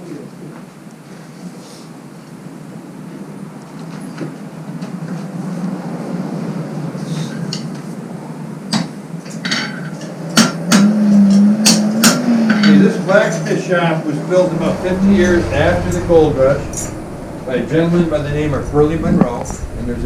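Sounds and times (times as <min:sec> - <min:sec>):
forge blower whirring: 0:14.3 - 0:20.0.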